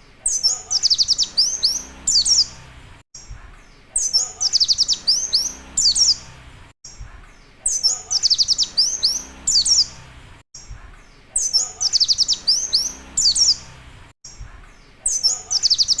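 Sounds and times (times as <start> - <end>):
sharp bird calls: 0.0 - 16.0
bird singing rapid high notes: 0.3 - 3.3, 4.0 - 7.0, 7.7 - 10.7, 11.4 - 14.4, 15.1 - 16.0.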